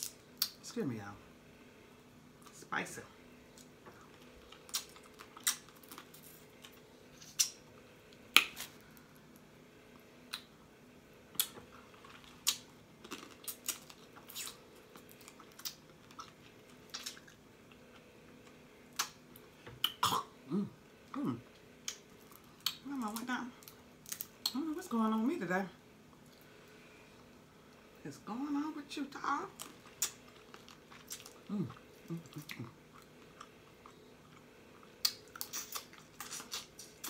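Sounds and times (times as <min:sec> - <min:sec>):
crab shell cracking and chewing: 0:03.6 - 0:07.6, 0:11.4 - 0:17.4, 0:29.6 - 0:37.0.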